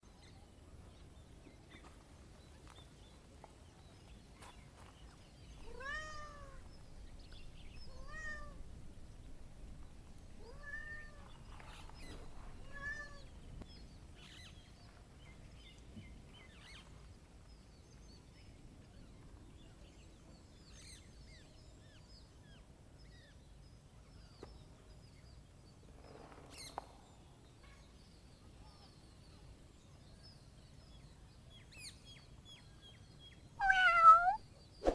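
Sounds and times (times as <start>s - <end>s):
faint bird chirping: 0.0s - 16.9s, 26.6s - 34.9s
cat meowing: 5.6s - 6.6s, 7.8s - 8.7s, 10.4s - 11.3s, 12.6s - 13.3s, 33.6s - 34.4s.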